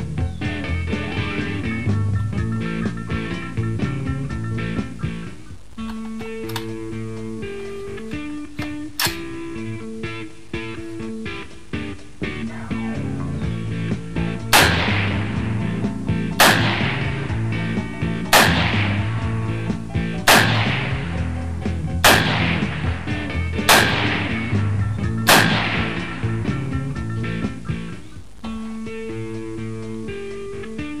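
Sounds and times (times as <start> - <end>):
guitar music: 0.0 - 31.0
rifle shots with echo: 14.4 - 17.4, 18.2 - 19.3, 20.2 - 21.2, 22.0 - 24.6, 25.2 - 26.2.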